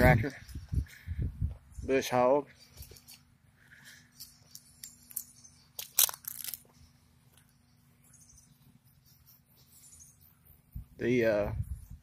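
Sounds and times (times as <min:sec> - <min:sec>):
faint bird chirps: 0:00.0 - 0:05.8, 0:06.6 - 0:12.0.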